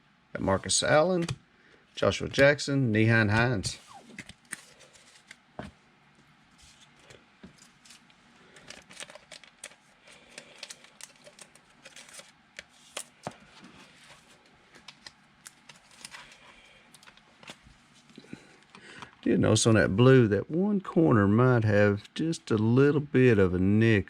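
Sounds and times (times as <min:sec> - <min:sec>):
trading cards being handled: 0:01.1 - 0:01.4, 0:03.2 - 0:19.2.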